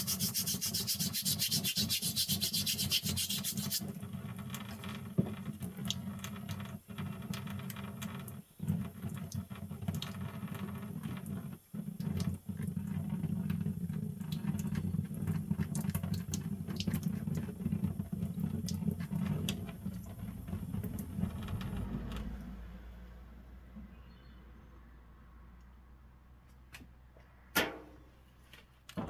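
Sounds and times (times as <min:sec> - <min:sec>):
brush scrubbing metal file: 0:00.0 - 0:03.9.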